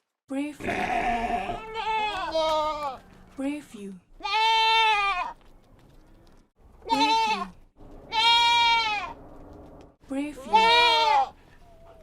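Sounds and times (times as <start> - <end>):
farm animal bleating: 0.6 - 3.2, 4.2 - 5.4, 6.8 - 9.2, 10.2 - 11.4.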